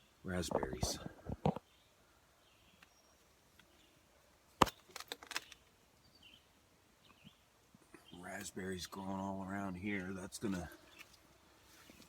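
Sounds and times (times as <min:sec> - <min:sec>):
light crackles: 0:04.5 - 0:05.8
faint bird chirps: 0:04.7 - 0:09.1.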